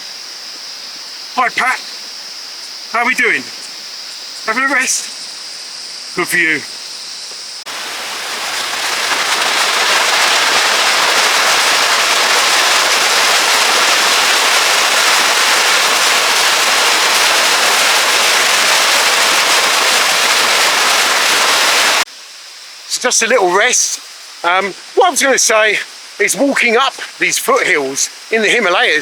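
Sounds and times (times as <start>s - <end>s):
stream rushing over rocks: 1.4s - 1.8s, 4.5s - 5.1s, 7.7s - 22.1s.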